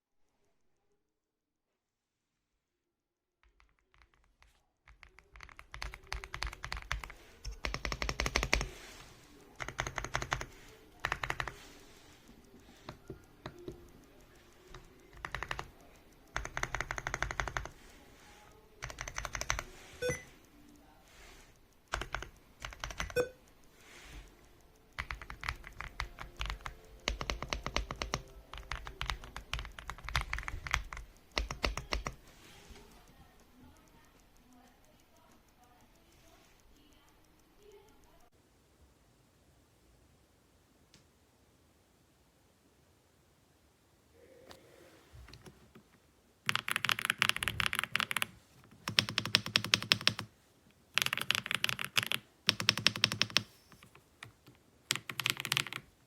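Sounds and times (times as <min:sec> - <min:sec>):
mechanical keyboard typing: 0:03.4 - 0:37.0, 0:45.3 - 0:56.0.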